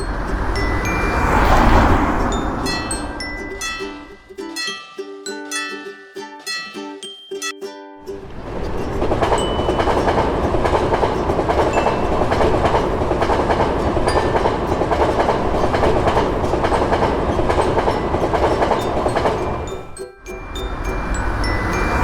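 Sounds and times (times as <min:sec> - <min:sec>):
train wheels clattering over rails: 0:08.2 - 0:22.0.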